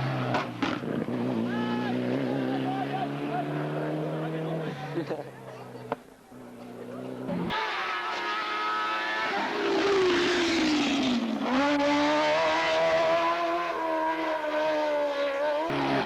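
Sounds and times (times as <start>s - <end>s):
race car engine revving: 0.0s - 5.0s, 6.4s - 16.0s.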